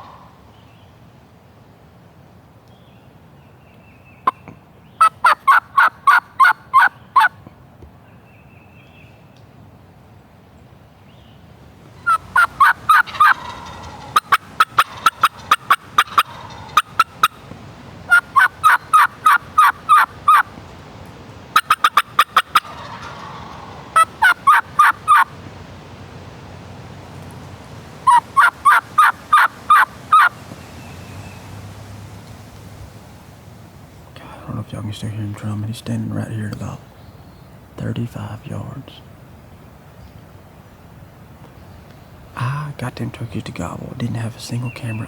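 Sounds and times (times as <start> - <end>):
turkey gobbling: 0.0 - 0.6, 4.2 - 7.4, 11.8 - 20.6, 21.5 - 32.1.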